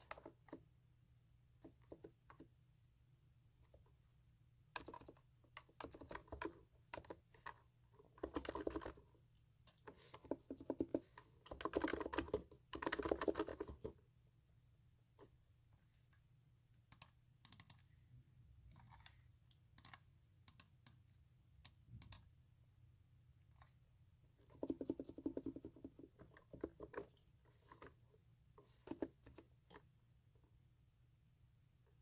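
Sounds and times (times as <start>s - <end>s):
computer keyboard keystrokes: 4.8s - 7.6s, 8.2s - 9.0s, 9.9s - 14.0s, 16.9s - 17.8s, 21.6s - 22.3s, 24.5s - 27.2s.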